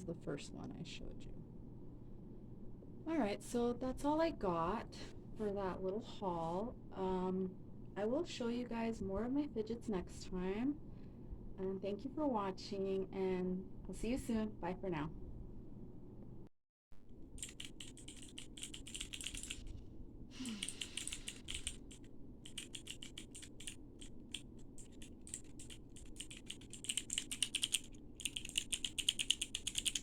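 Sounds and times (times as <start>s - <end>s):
fidget toy clicking rapidly: 17.4s - 19.6s, 20.5s - 30.0s.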